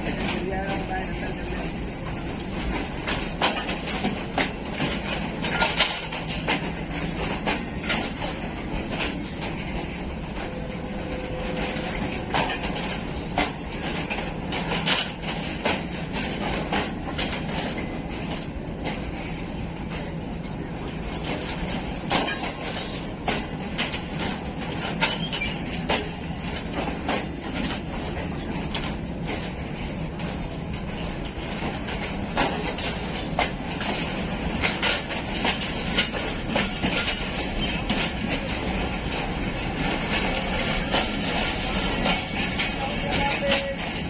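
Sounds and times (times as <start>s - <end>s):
train rumbling: 0.0s - 44.0s
train wheels clicking over rail joints: 0.0s - 44.0s.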